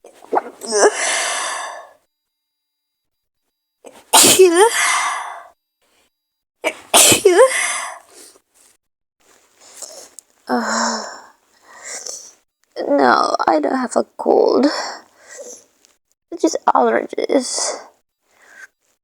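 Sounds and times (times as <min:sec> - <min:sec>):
woman sneezing: 0:03.9 - 0:04.8, 0:06.7 - 0:07.7.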